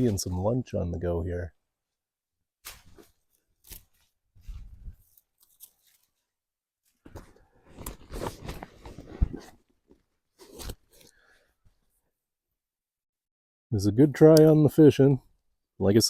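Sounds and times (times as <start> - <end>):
camping gear rustling: 2.6 - 12.0.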